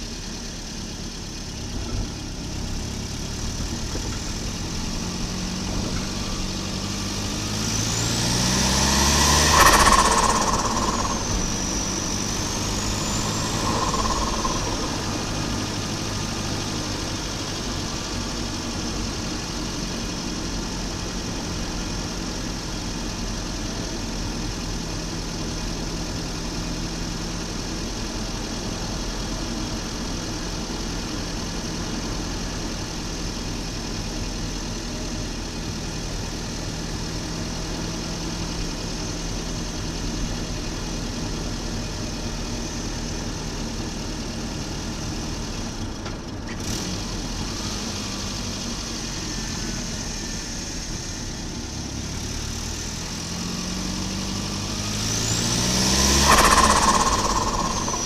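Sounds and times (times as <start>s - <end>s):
high whine: 7.8s - 18.4s, 55.5s - 58.0s.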